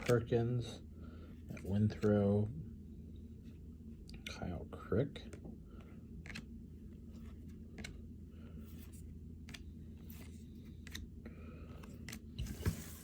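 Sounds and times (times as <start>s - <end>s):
cards being flipped through: 0.0s - 0.3s, 1.4s - 2.2s, 6.0s - 11.1s, 11.7s - 13.0s
low room hum: 0.0s - 13.0s.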